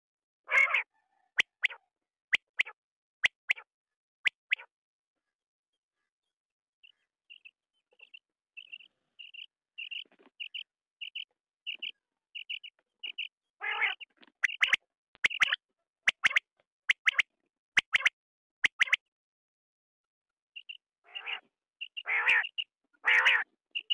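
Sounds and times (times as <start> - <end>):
quail calling: 0.5 - 1.8, 7.3 - 17.2, 20.6 - 23.9.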